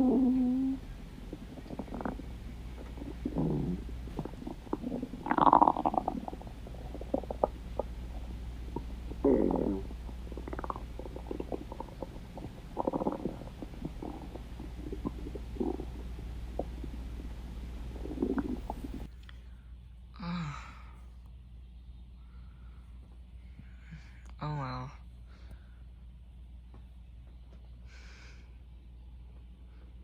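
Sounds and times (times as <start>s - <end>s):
stomach growling: 0.0s - 19.1s.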